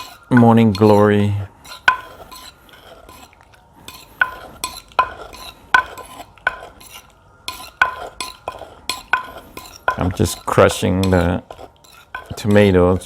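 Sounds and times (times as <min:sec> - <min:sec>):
pestle pounding in a mortar: 0:01.7 - 0:02.4, 0:04.2 - 0:06.8, 0:07.5 - 0:12.6.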